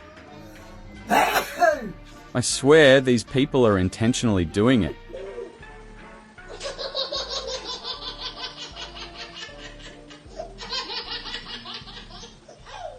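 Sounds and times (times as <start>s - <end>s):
background music: 0.0s - 12.9s
baby laughing: 1.1s - 1.9s, 6.5s - 12.9s.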